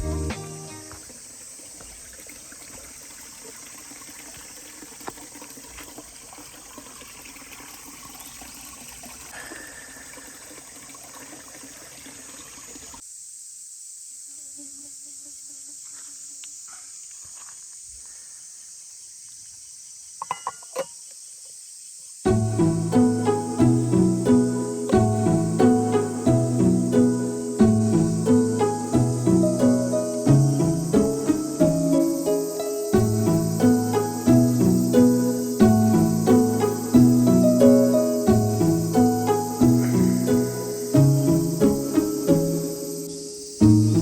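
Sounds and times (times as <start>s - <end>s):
insects chorus: 0.0s - 6.6s, 8.4s - 44.0s.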